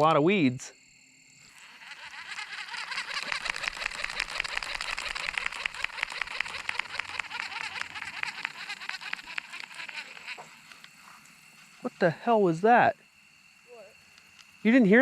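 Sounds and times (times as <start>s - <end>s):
fishing reel clicking: 2.8s - 11.0s.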